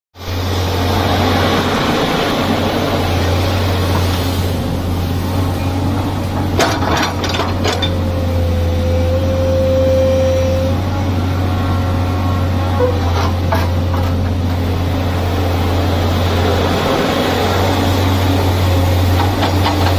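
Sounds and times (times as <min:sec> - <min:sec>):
diesel engine droning: 0:00.2 - 0:19.9.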